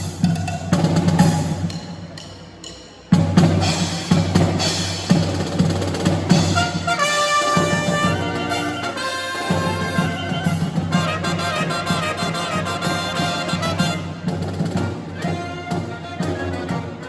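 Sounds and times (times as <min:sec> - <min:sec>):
marching band drums: 0:00.0 - 0:17.0
held brass notes: 0:06.1 - 0:17.0.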